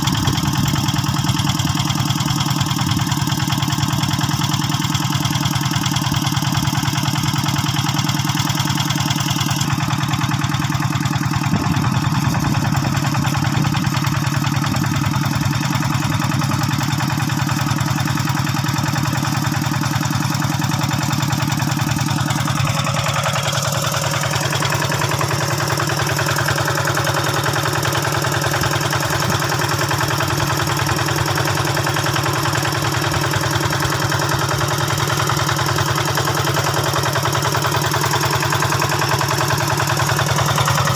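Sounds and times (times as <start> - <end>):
tractor engine running: 0.0 - 40.9.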